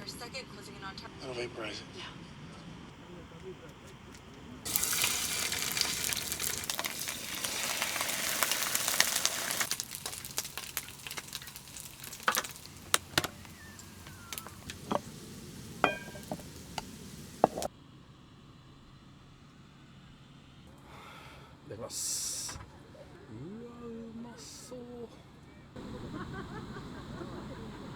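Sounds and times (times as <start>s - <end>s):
food sizzling in a pan: 4.7s - 17.7s
utensils clinking against pan: 4.7s - 17.7s.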